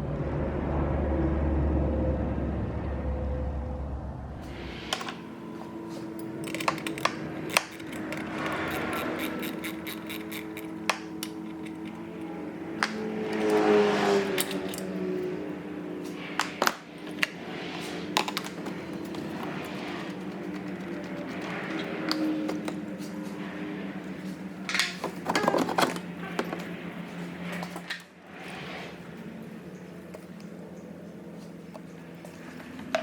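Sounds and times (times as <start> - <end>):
metallic clinks of hand tools: 6.4 - 12.3.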